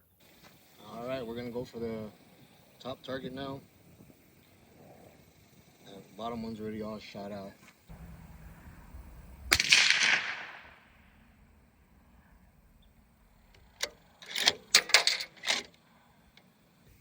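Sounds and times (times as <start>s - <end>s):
suppressed rifle shot: 9.1s - 11.6s.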